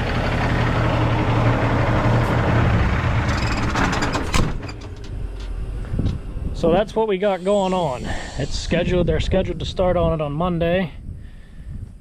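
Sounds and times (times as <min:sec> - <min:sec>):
diesel engine idling: 0:00.0 - 0:09.8
blow-by puffing: 0:07.3 - 0:09.8.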